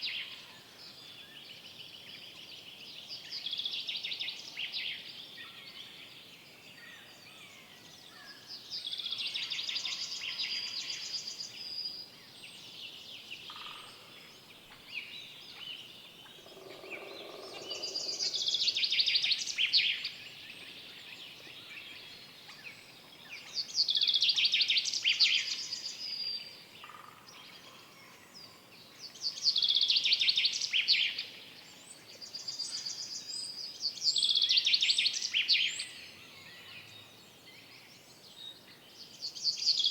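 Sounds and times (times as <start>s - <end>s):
songbirds singing trilled song: 0.0s - 39.9s.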